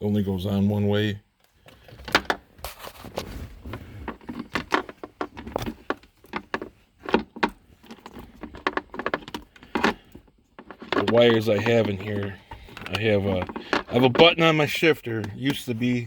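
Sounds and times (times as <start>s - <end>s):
plastic trim covers clicking: 4.1s - 14.4s.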